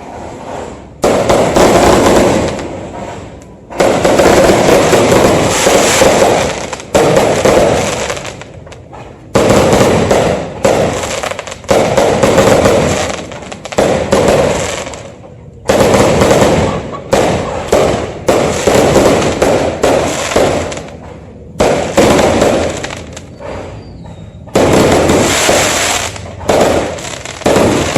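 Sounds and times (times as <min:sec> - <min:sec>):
fireworks bursting: 0:00.0 - 0:27.9.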